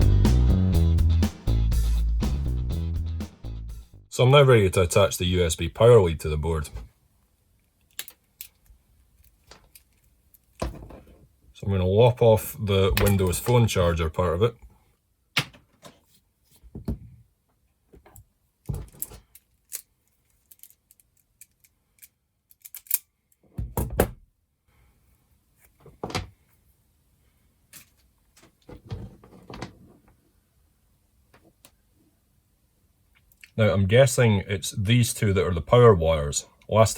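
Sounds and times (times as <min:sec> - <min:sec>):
hand tools clicking and snipping: 0:20.5 - 0:23.0.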